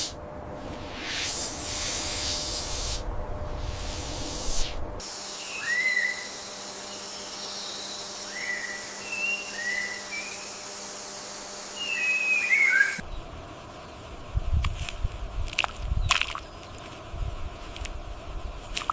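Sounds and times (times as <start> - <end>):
animal whistled calls: 5.4 - 6.3, 11.8 - 13.0.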